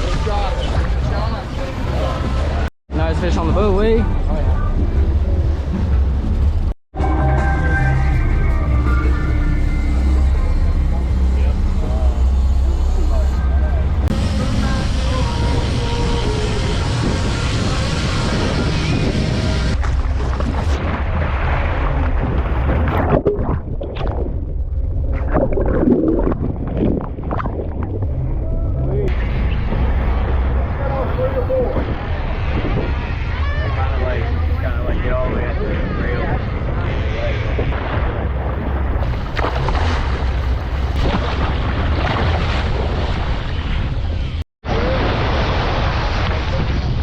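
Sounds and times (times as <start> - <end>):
boat engine low rumble: 0.0 - 47.0
water splashing against hull: 8.5 - 33.0, 35.9 - 47.0
wind buffeting microphone: 14.0 - 47.0.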